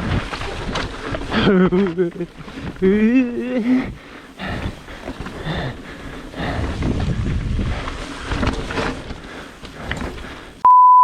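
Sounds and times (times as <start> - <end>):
mountain bike tyres rolling and rattling: 0.0 - 10.6
wind buffeting microphone: 3.8 - 10.4
steady high beep: 10.6 - 11.0.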